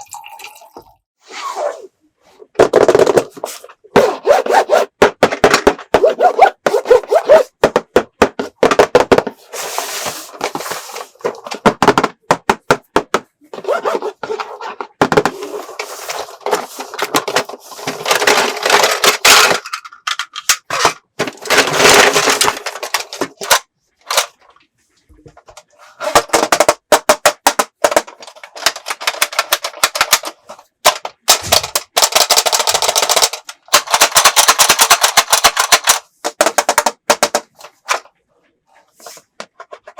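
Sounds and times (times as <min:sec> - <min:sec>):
plastic toy pieces clicking: 0:26.3 - 0:37.4.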